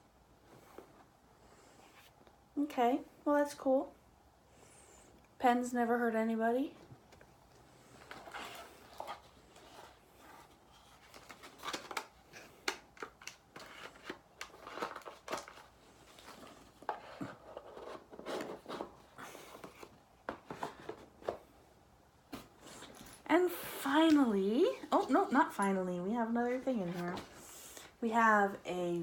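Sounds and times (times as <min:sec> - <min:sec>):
packaging crinkling and rustling: 0:07.2 - 0:21.5.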